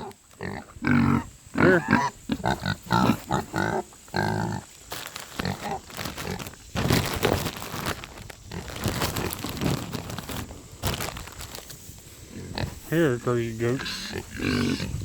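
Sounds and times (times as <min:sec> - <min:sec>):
farm animal grunting: 0:00.0 - 0:04.7, 0:05.4 - 0:06.6, 0:12.2 - 0:15.0
bag crackling and crinkling: 0:04.5 - 0:12.9.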